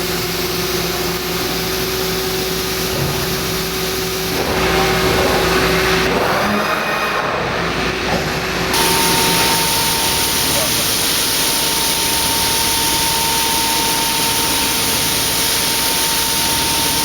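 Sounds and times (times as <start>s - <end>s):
machine mechanical hum: 0.0s - 17.0s
hissing noise: 8.8s - 17.0s.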